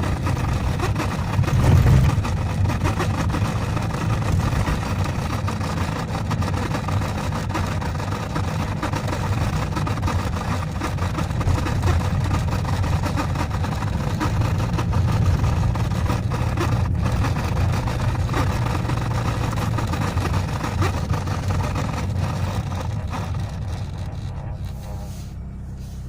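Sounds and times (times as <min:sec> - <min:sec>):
car engine running: 0:00.0 - 0:26.0
speedometer cable humming: 0:00.0 - 0:26.0.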